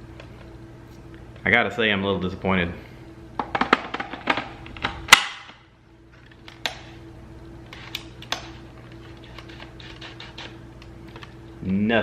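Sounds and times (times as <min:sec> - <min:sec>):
loud plastic snap: 0:03.5 - 0:05.6.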